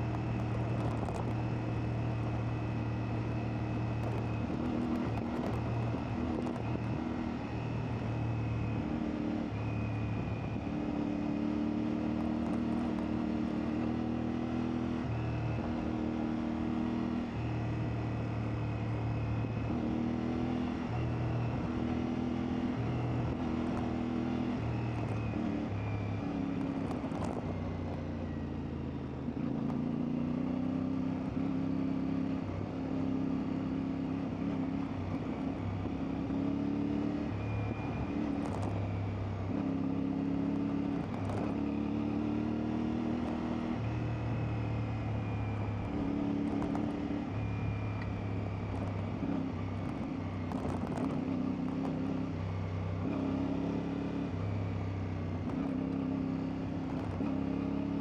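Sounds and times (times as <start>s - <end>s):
motorcycle engine changing gears: 31.3s - 58.0s.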